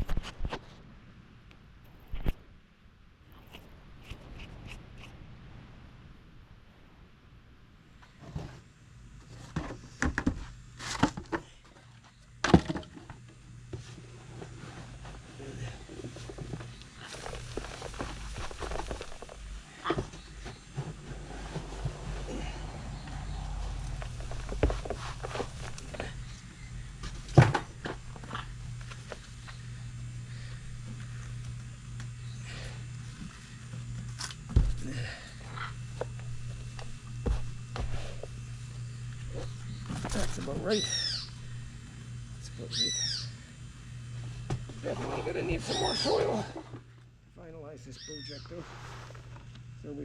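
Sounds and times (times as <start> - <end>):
faint low hum: 0.0 - 50.0
soil scraping rush: 14.2 - 26.4.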